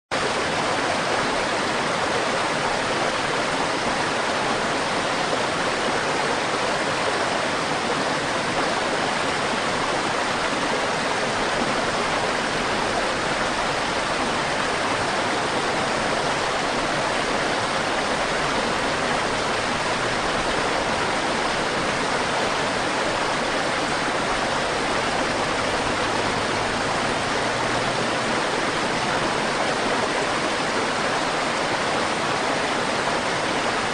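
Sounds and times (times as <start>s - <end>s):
river water rushing: 0.1s - 33.9s.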